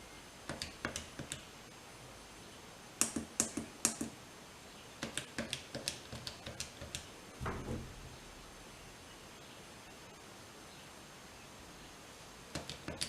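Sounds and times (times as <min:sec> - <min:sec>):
dull thump: 0:07.4 - 0:08.2.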